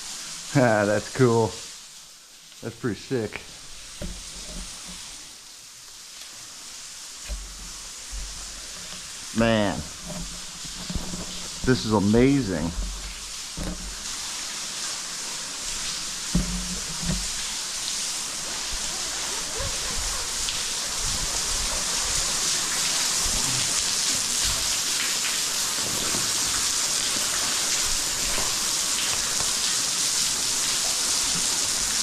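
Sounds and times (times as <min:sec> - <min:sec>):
waterfall hissing: 0:00.0 - 0:32.0
dull thumps: 0:16.3 - 0:17.5.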